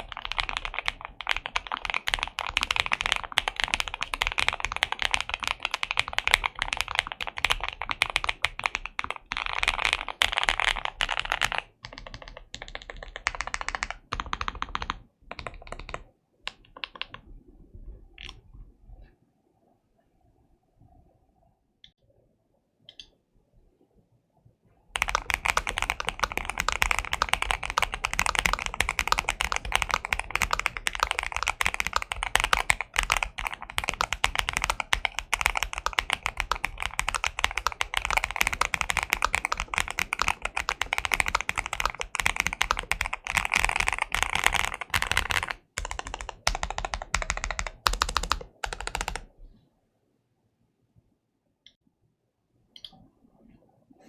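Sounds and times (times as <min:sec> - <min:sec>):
typing on mechanical keyboard: 0:00.0 - 0:17.3, 0:18.2 - 0:18.4, 0:25.0 - 0:49.4.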